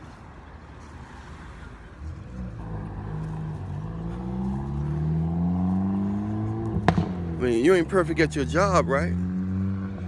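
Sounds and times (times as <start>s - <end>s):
car engine speeding up: 2.3s - 10.0s.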